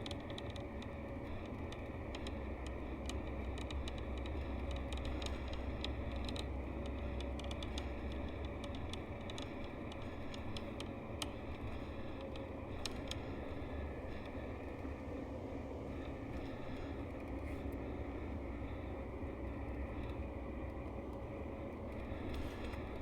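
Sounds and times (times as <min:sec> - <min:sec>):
light rattles and ticks: 0:00.0 - 0:14.8.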